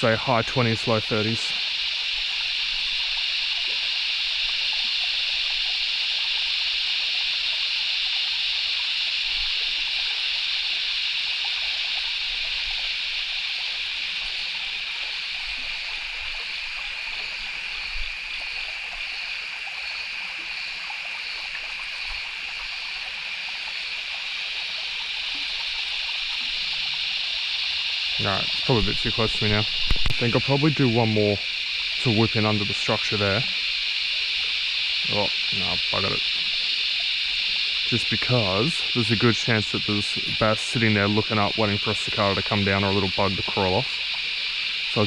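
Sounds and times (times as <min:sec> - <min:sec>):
chorus of night insects: 0:00.0 - 0:45.0
pulsing repeating insect call: 0:00.0 - 0:45.0.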